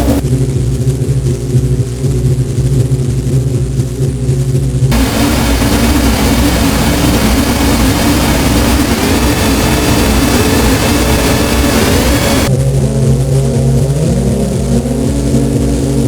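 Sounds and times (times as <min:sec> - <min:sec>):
low pulsing synth drone: 0:00.0 - 0:02.8, 0:04.9 - 0:16.0
faint rising tone: 0:04.9 - 0:12.5
loud noise hiss: 0:04.9 - 0:12.5
low rumble: 0:04.9 - 0:13.9.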